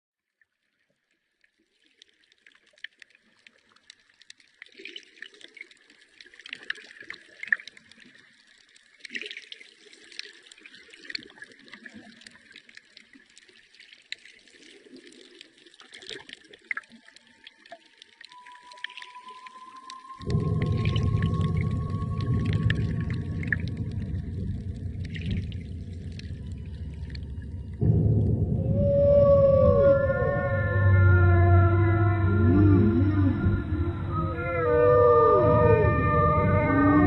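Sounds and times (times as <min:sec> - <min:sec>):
bubbling water: 0:02.0 - 0:37.0
long rising whale call: 0:16.9 - 0:37.0
dense crackling clicks: 0:19.7 - 0:28.6.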